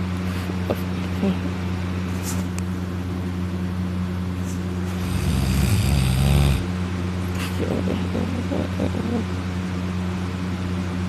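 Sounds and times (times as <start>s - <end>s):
steady low hum: 0.0s - 11.0s
man snoring: 4.9s - 6.7s.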